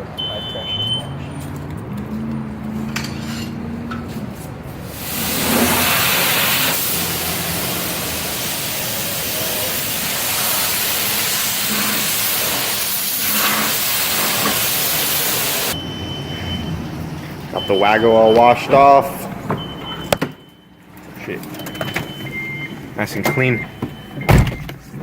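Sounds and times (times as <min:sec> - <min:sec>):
high-pressure water spray hissing: 0:04.8 - 0:15.8.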